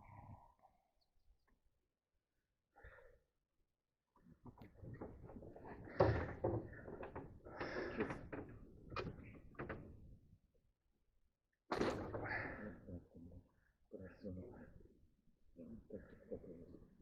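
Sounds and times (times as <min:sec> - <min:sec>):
knocking and clattering in a boat: 0:04.5 - 0:10.2.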